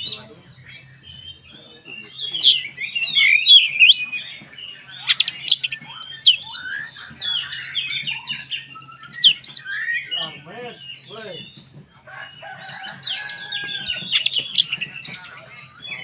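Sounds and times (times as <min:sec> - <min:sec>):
bird singing whistles and chirps: 0:00.0 - 0:11.7, 0:12.7 - 0:16.0
harsh clicking bird notes: 0:02.2 - 0:10.4, 0:13.2 - 0:16.0.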